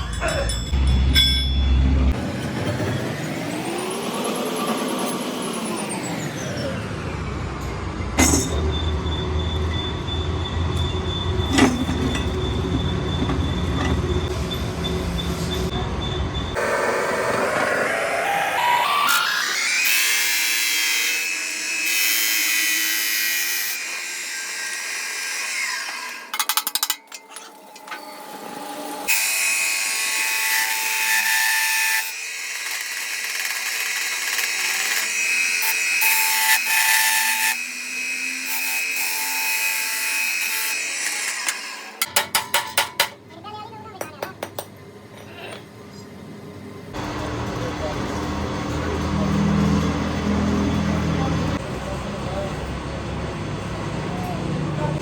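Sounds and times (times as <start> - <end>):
power tools whining on metal: 2.1 - 15.7, 16.5 - 43.1.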